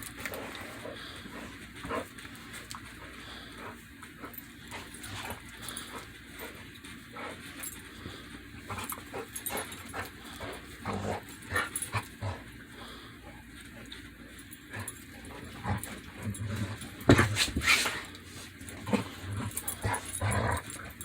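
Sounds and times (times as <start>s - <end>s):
dogs sneezing and snorting: 15.3s - 21.0s.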